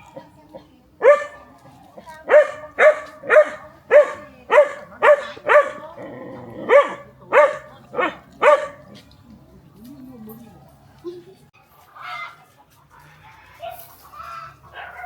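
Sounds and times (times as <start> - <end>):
dog barking: 1.0 - 1.6, 2.2 - 6.0, 6.6 - 9.0, 14.7 - 15.0.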